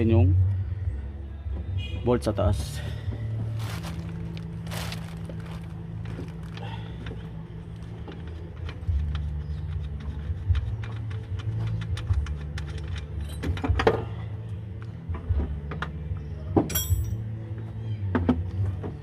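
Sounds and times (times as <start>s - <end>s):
hand tools clinking on metal: 16.6s - 17.2s
ringing metal clink: 16.7s - 17.2s.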